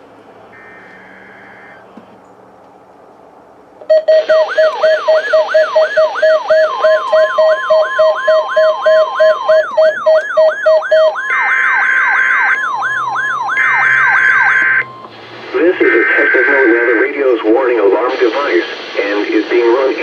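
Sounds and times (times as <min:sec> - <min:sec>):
steady warning alarm tone: 0:00.5 - 0:02.3, 0:03.8 - 0:20.0
higher beep: 0:03.8 - 0:17.1
falling whoop alarm: 0:03.9 - 0:15.2
pulsing beep: 0:03.9 - 0:15.2.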